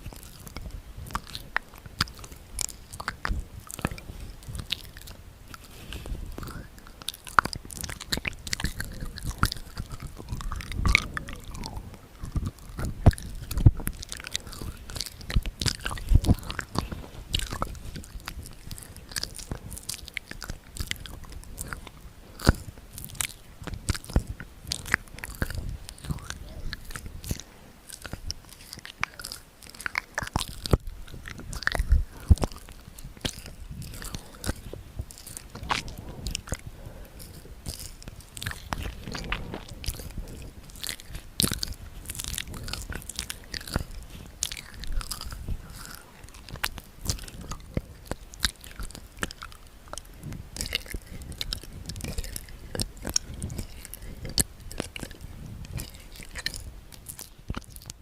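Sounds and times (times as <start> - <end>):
wet mouth clicks and smacks: 0.0 - 58.0.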